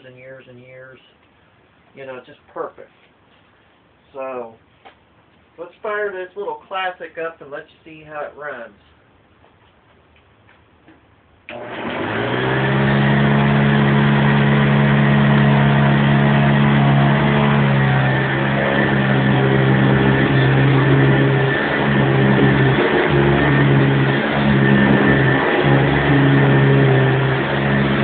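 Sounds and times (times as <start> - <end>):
vacuum cleaner motor humming: 11.5 - 28.0.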